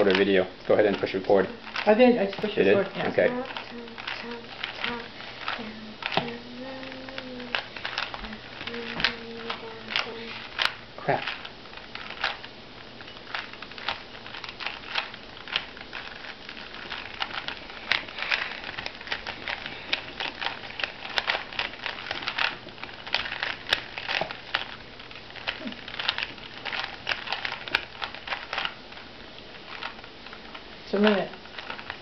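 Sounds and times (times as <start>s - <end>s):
puzzle cubes clicking: 0.0s - 12.4s.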